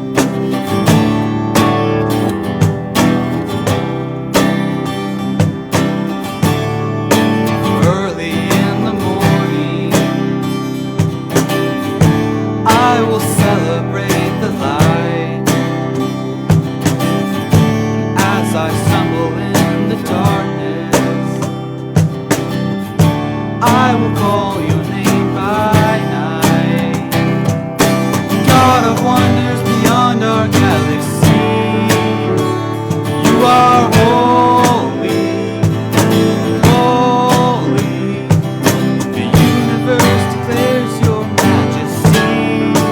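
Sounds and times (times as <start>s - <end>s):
strummed acoustic guitar music: 0.0s - 42.9s.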